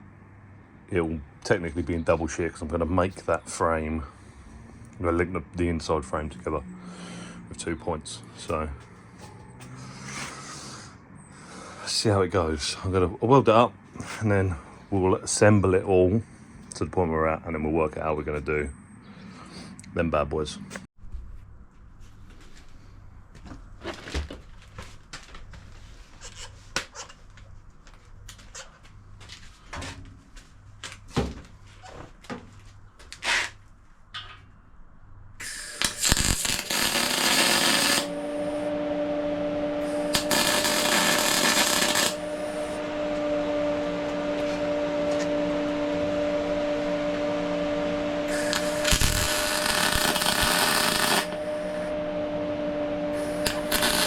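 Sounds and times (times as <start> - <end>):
machine hum: 34.1 - 54.0
welding hissing and crackling: 35.4 - 38.6, 39.8 - 42.8, 48.3 - 51.9, 53.2 - 54.0.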